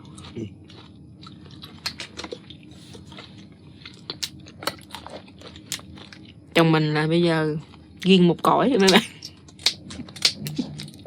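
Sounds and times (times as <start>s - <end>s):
lobster shell crunching while chewed: 0.0s - 6.4s, 9.3s - 11.0s.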